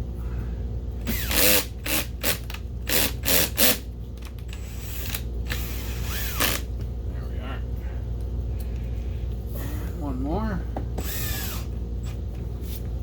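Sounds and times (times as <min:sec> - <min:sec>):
cordless drill driving screws: 0:01.0 - 0:03.8, 0:04.5 - 0:06.6, 0:11.0 - 0:11.7
drill clutch ratcheting: 0:01.0 - 0:06.7, 0:11.0 - 0:11.7.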